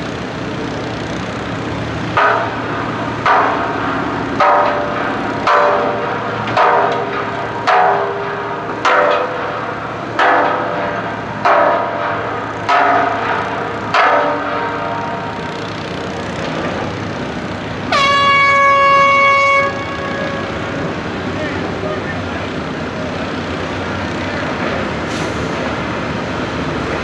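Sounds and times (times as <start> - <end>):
sharp metallic clanks: 2.0 - 27.0
steady horn blast: 17.9 - 22.1.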